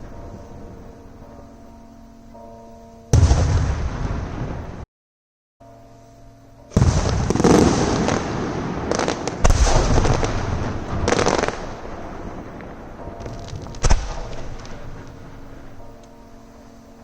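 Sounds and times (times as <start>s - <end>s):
firework booms with rumbling tail: 3.1s - 4.8s, 6.7s - 15.7s
firework crackles: 6.7s - 15.8s.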